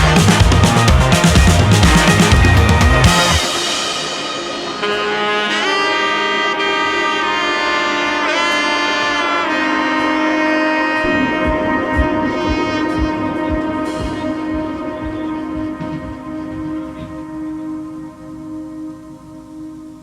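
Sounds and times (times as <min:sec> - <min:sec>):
steady low beat: 0:00.0 - 0:03.8, 0:11.0 - 0:18.9
saxophone-like melody: 0:00.0 - 0:20.0.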